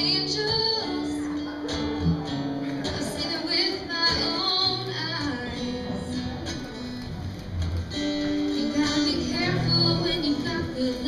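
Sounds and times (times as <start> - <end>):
acoustic guitar: 0.0 - 11.0
person singing: 2.8 - 6.5, 8.4 - 11.0.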